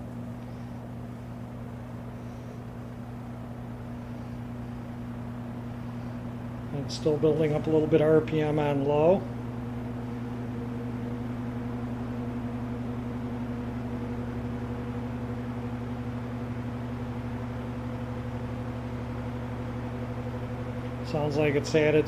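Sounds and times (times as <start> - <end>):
fan motor hum: 0.0 - 22.0.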